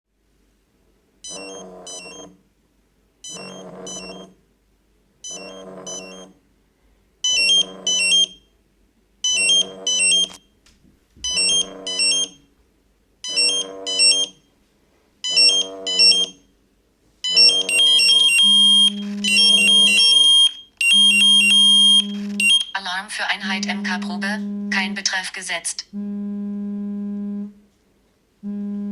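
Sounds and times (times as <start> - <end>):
continuous beeping alarm: 1.3 - 2.3, 3.3 - 4.3, 5.2 - 6.3, 7.2 - 8.5, 9.2 - 10.5, 11.2 - 12.5, 13.2 - 14.5, 15.2 - 16.5, 17.2 - 27.6
pager alert tone pattern: 3.3 - 4.3, 7.3 - 8.4, 9.3 - 10.4, 11.3 - 12.4, 13.3 - 14.4, 15.3 - 16.4, 17.3 - 22.8, 23.4 - 25.1.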